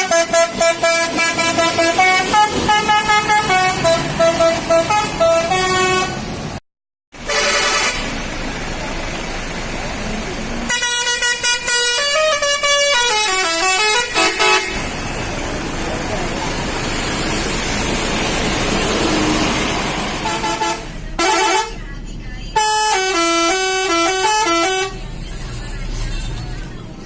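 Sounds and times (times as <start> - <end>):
short horn blast: 0.0 - 6.2, 7.2 - 8.1, 20.2 - 21.8
bus musical horn tune: 0.0 - 6.6, 7.2 - 8.2, 10.7 - 15.0, 20.2 - 21.8, 22.5 - 25.1
traffic noise: 0.0 - 27.0
voices: 7.4 - 27.0.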